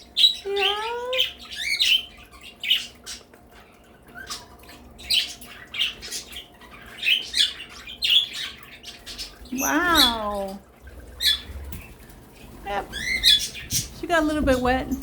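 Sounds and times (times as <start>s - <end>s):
parakeets chirping and squawking: 0.0s - 15.0s.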